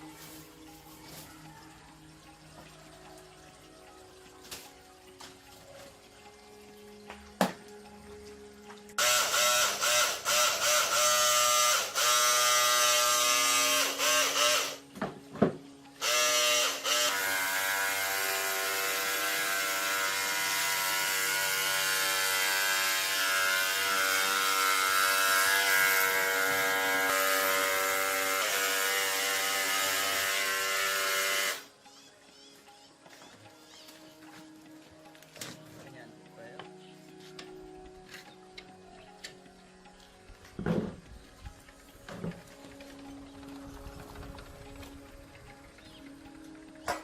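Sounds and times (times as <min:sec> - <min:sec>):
power tool motor whine: 0:09.0 - 0:14.9, 0:16.0 - 0:31.7.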